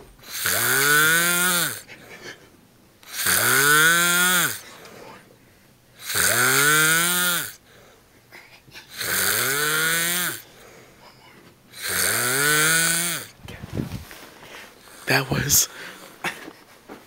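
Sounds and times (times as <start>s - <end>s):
man snoring loudly: 0.2s - 1.9s, 3.1s - 4.6s, 6.0s - 7.6s, 8.9s - 10.4s, 11.8s - 13.4s.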